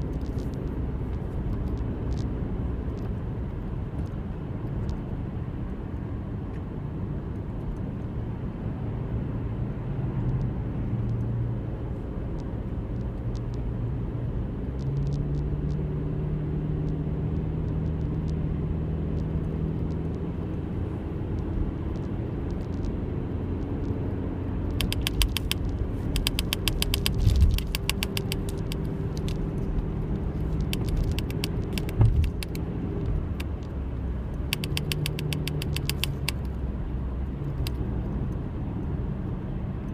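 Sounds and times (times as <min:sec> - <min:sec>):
engine running low rumble: 0:00.0 - 0:39.9
rapid clicking rattle: 0:24.8 - 0:29.4, 0:30.4 - 0:32.6, 0:34.5 - 0:36.5.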